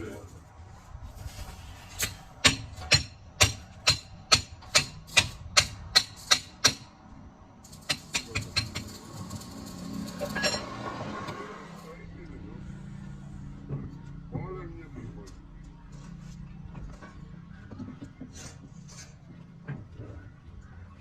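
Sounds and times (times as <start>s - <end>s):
hammer striking metal: 2.0s - 6.9s.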